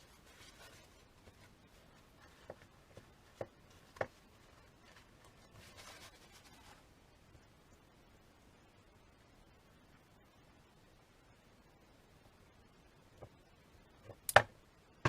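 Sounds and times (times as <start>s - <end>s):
soft rustle: 0.0s - 7.0s.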